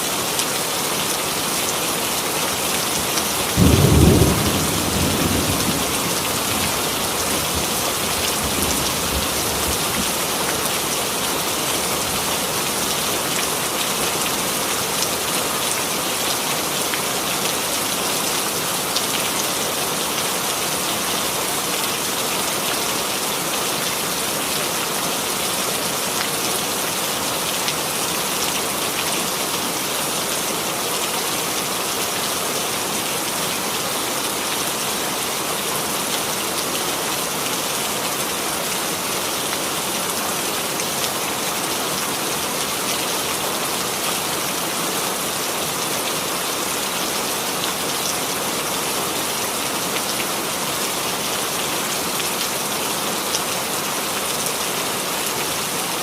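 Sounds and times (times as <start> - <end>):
rain hissing: 2.2 - 12.6.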